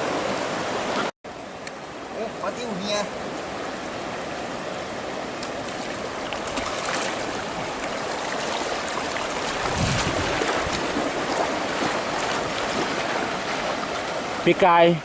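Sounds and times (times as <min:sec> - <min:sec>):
floodwater rushing: 0:00.0 - 0:15.0.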